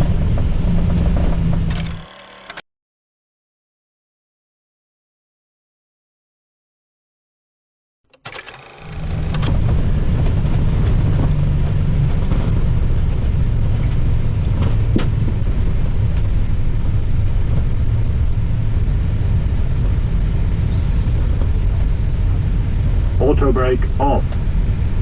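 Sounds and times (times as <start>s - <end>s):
aircraft engine rumble: 9.3s - 25.0s.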